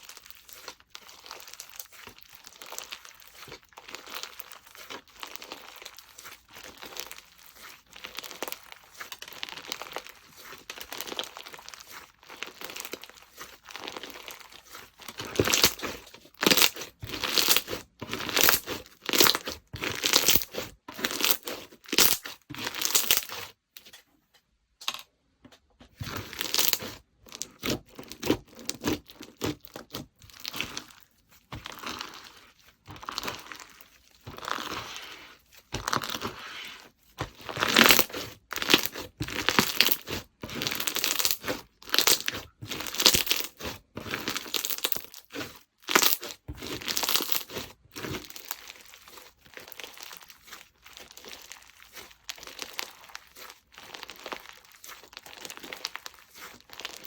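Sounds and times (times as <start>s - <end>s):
slime squished by hand: 0.0s - 23.6s, 26.0s - 57.0s.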